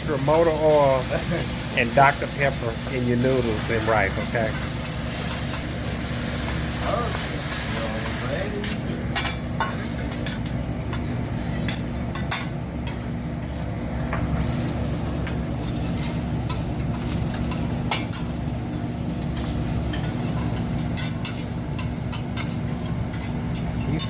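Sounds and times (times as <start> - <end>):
food sizzling on a griddle: 0.0 - 24.0
metal spatulas scraping and clinking: 19.4 - 24.0.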